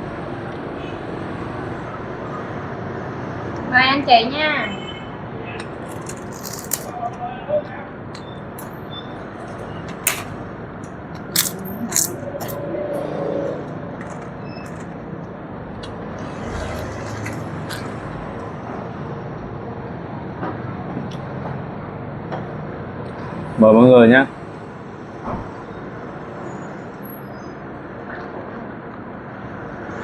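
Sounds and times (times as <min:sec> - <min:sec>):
steady background hum: 0:00.0 - 0:30.0
eating crunches and clicks: 0:05.6 - 0:07.0, 0:10.8 - 0:12.6, 0:16.8 - 0:18.6.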